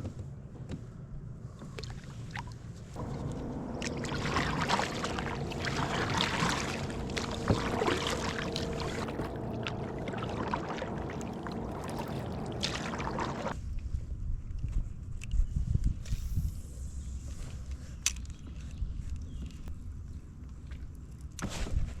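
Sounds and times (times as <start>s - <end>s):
water sloshing against kayak: 3.0s - 13.6s.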